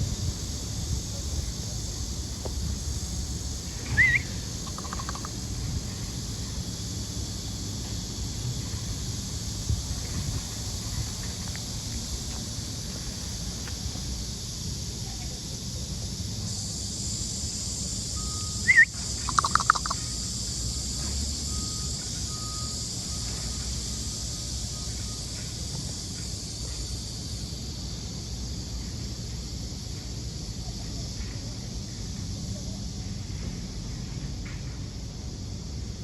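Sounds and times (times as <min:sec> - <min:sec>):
high-pitched animal call: 0:03.9 - 0:05.3, 0:18.7 - 0:20.0.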